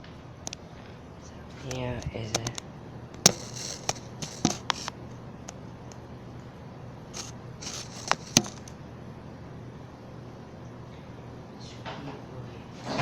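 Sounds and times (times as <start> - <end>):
sharp taps and knocks: 3.2 - 5.0, 7.2 - 8.7
short scraping rustles: 3.3 - 4.9, 7.2 - 8.7.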